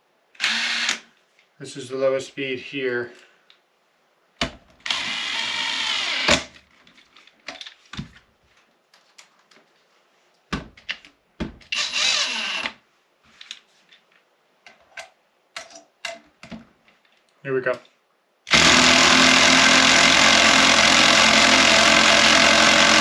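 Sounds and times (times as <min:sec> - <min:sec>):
cordless drill motor whine: 0:00.4 - 0:01.1, 0:04.8 - 0:06.4, 0:11.7 - 0:12.7, 0:18.5 - 0:23.0.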